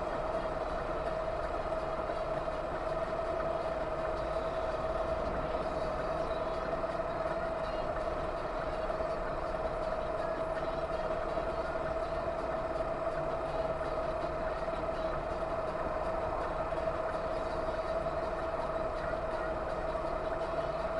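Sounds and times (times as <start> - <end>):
constant whine: 0.0 - 20.9
vehicle running rumble: 0.0 - 20.9.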